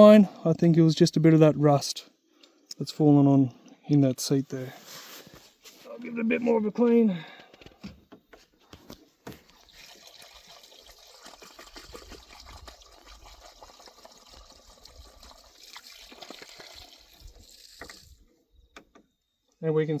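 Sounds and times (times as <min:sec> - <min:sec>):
water running into a valve: 0:09.3 - 0:18.3.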